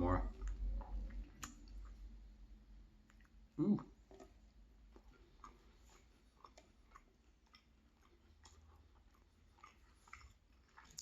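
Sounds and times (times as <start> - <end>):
soft chewing clicks: 0.0 - 11.0.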